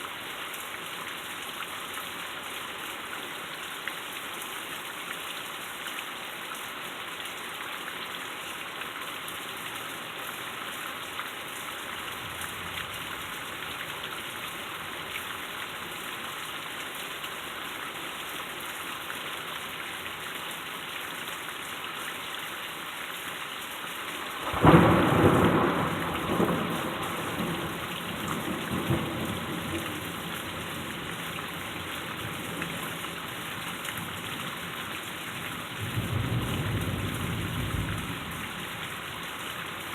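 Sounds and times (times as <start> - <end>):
rain hissing: 24.1 - 39.9
thunder clap rumbling: 24.4 - 31.0.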